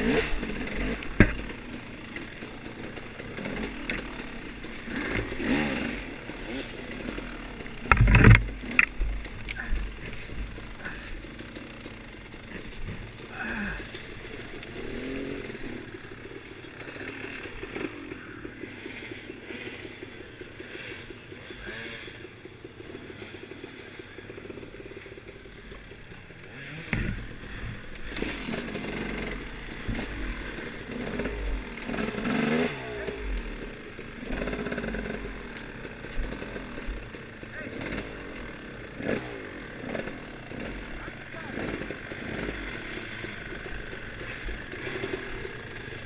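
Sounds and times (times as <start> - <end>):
dirt bike engine revving: 0.0 - 46.0
low thumps and buffeting: 7.6 - 10.8, 26.8 - 30.6.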